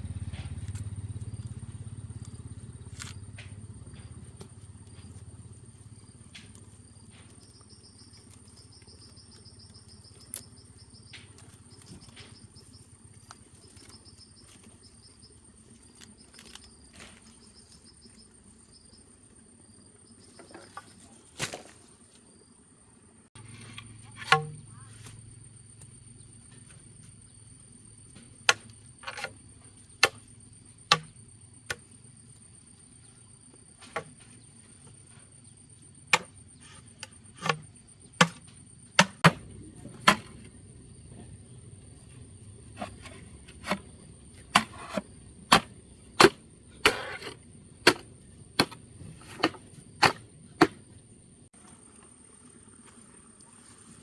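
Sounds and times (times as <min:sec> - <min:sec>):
tool striking bamboo or wood: 0:23.6 - 0:24.8, 0:30.0 - 0:31.9, 0:36.1 - 0:40.6, 0:42.7 - 0:51.0.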